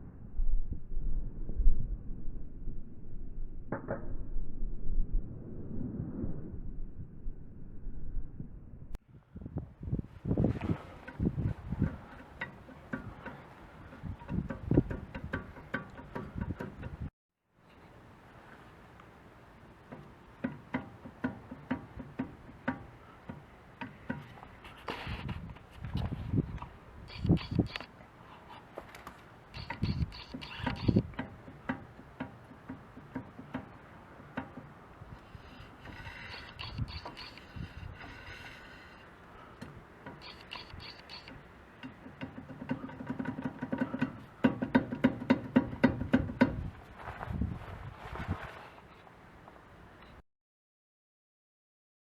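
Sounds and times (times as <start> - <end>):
high-pitched wheel hub squeak: 27.1 - 27.9, 29.5 - 31.1, 35.4 - 39.1, 40.1 - 44.9.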